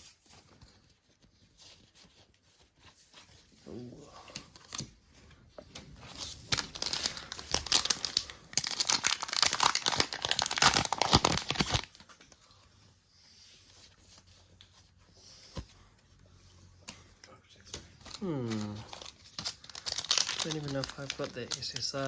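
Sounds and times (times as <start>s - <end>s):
foil wrapper tearing and crinkling: 6.1s - 12.0s, 18.0s - 22.0s.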